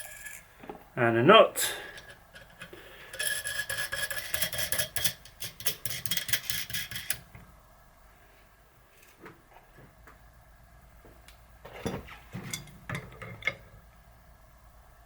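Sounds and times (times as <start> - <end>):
metal washers and nuts clinking: 11.7 - 13.7.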